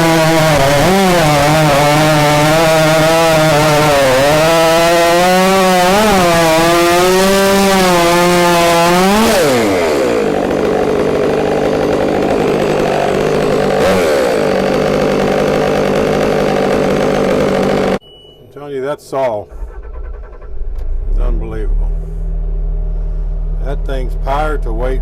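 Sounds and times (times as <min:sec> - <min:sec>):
chainsaw cutting log: 0:00.0 - 0:18.0.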